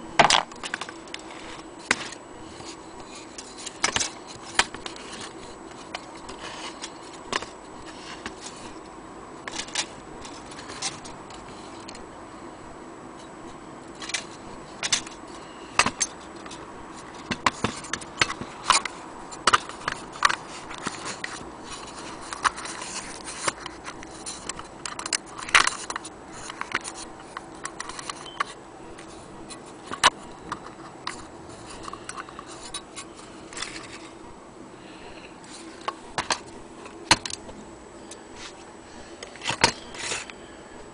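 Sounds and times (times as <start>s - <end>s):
faint steady hum: 0.0s - 40.9s
small hard object clicking and rattling: 0.2s - 8.8s, 9.4s - 12.0s, 13.9s - 34.1s.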